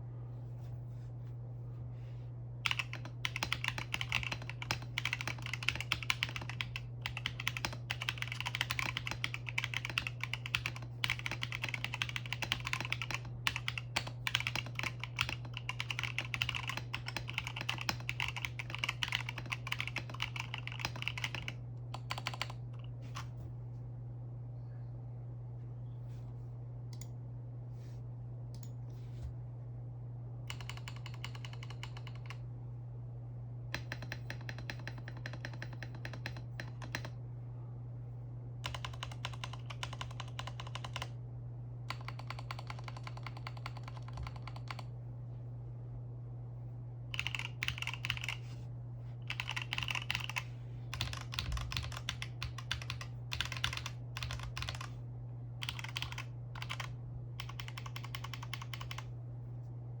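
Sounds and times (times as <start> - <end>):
steady low hum: 0.0 - 60.0
mechanical keyboard typing: 2.6 - 22.9, 30.5 - 32.4, 33.7 - 37.2, 38.6 - 41.2, 41.9 - 44.9, 47.1 - 48.4, 49.3 - 55.0, 55.6 - 59.1.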